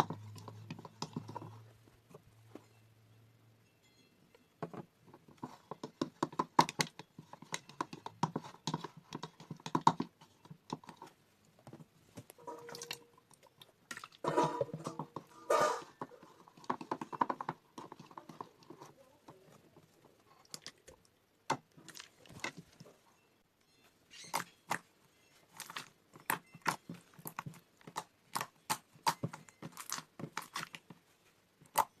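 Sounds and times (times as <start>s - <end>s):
slime squishing and popping: 25.5s - 30.8s.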